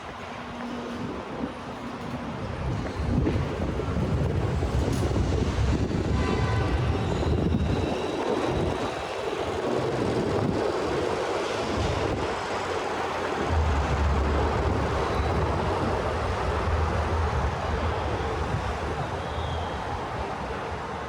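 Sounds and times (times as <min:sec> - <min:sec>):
heavy vehicles rumbling past: 0:13.4 - 0:19.0.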